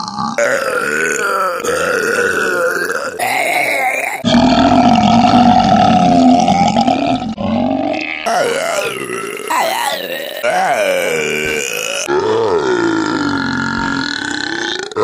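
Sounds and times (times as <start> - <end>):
person burping loudly: 0.0 - 15.0.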